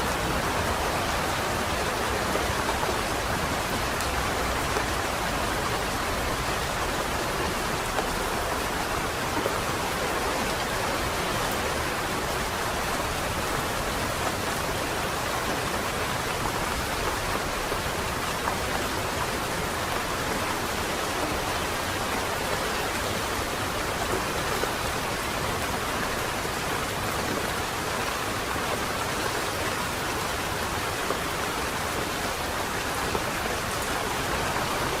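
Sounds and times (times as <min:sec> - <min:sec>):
light rain falling: 0:00.0 - 0:35.0.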